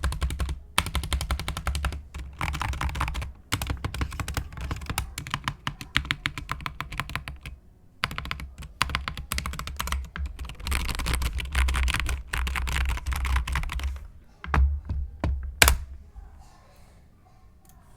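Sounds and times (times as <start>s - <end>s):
keyboard typing: 0.0s - 16.0s.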